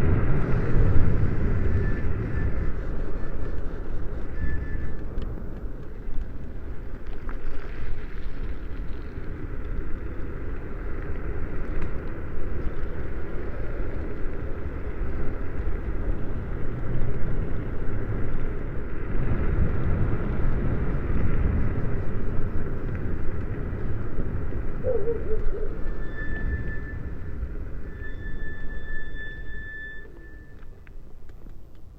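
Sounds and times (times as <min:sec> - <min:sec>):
rumbling road noise: 0:00.0 - 0:31.9
wind buffeting microphone: 0:00.0 - 0:31.9.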